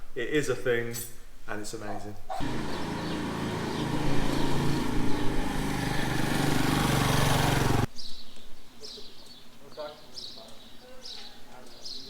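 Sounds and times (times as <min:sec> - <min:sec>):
small engine droning: 0:02.4 - 0:07.9.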